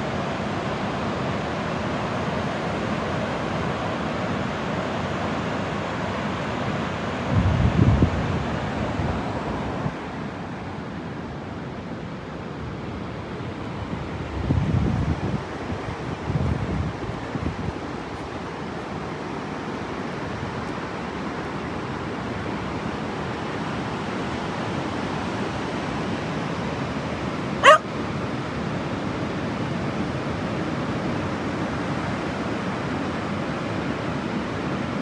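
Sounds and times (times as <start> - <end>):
wind: 0.0 - 35.0
dog yipping: 27.6 - 27.8.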